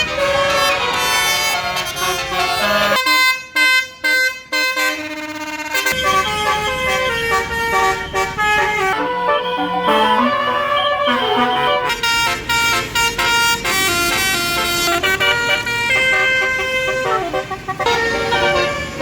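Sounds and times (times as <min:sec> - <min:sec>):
multi-tone air horn melody: 0:00.0 - 0:19.0
low engine rumble: 0:06.0 - 0:19.0.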